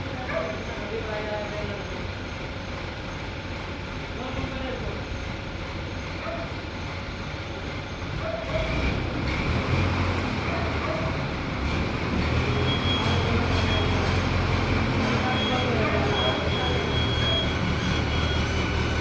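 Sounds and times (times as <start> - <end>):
heavy vehicle engine rumbling: 0.0 - 19.0
short high beep: 15.1 - 18.8.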